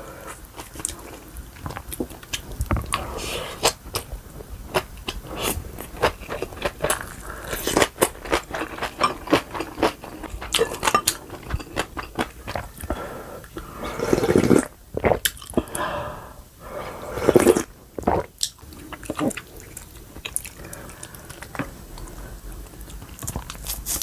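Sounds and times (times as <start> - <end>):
crisp chewing and crunching: 4.7 - 12.9, 17.3 - 24.0.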